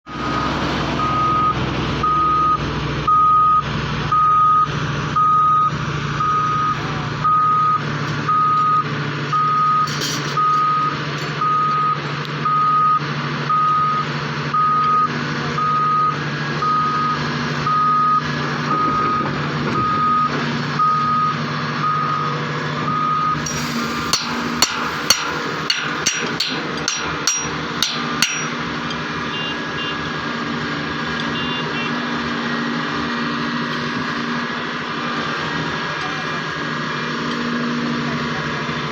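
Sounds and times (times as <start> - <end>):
diesel machinery running: 0.0 - 38.9
reversing alarm beeping: 0.2 - 30.1
sharp knocks and clanks: 23.4 - 29.1.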